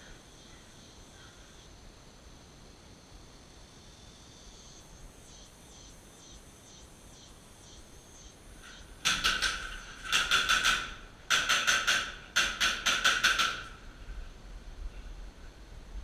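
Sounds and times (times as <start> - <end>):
electric gun firing bursts: 9.0 - 13.8.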